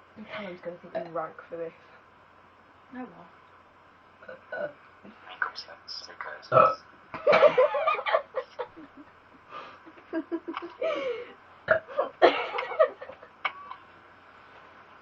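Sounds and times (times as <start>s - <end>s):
person burping: 4.2s - 4.8s, 6.5s - 6.8s, 11.7s - 12.1s.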